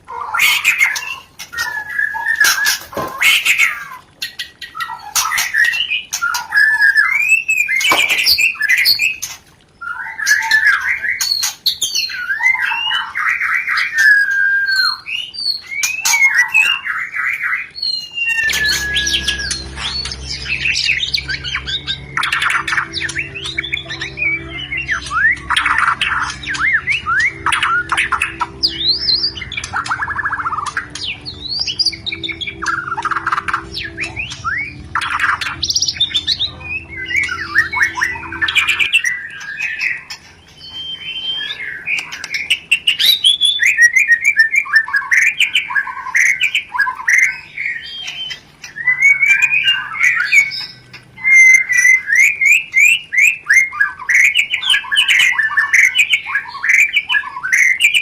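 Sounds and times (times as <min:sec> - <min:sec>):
bird chattering calls and trills: 0:00.0 - 0:58.0
faint low hum: 0:17.8 - 0:44.0.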